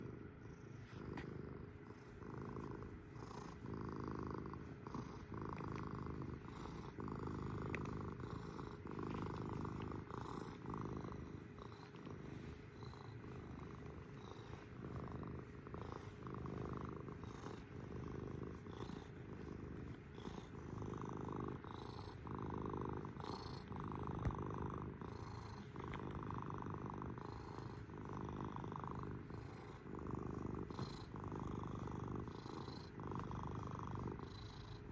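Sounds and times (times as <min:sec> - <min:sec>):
cat purring: 0:00.0 - 0:34.9.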